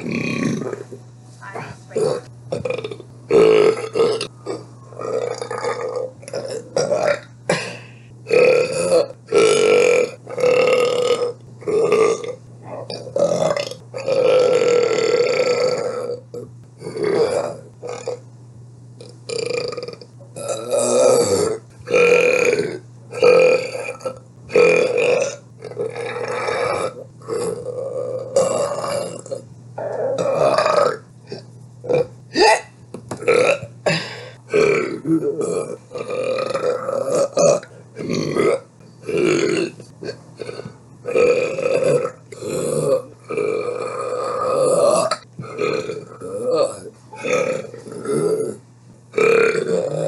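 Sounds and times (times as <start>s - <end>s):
woman burping: 26.0s - 32.7s.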